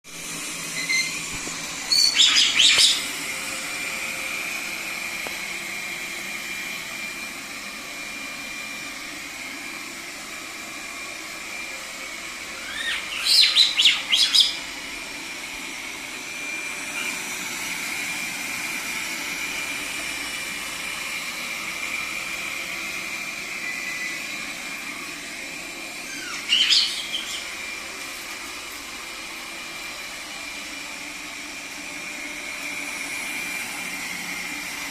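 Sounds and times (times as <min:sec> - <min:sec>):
robot vacuum cleaner whirring: 0:00.1 - 0:34.9
parrot screeching: 0:01.9 - 0:03.1, 0:12.6 - 0:14.6, 0:26.0 - 0:27.5.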